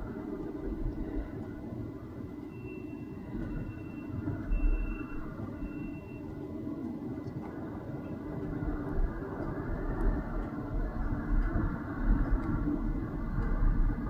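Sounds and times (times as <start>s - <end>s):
backup alarm beeping: 2.4s - 6.3s.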